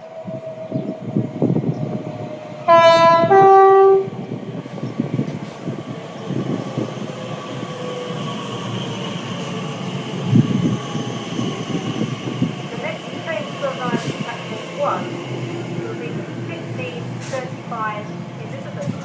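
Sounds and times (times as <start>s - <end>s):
train rumble and wheel clatter: 0.0s - 19.0s
train two-tone horn: 2.7s - 4.2s.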